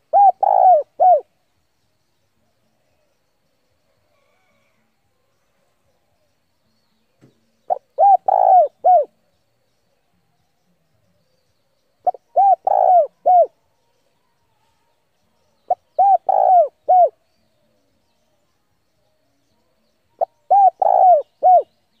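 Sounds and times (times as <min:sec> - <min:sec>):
dove cooing: 0:00.0 - 0:01.3, 0:07.7 - 0:09.2, 0:12.0 - 0:13.6, 0:15.7 - 0:17.2, 0:20.2 - 0:21.8.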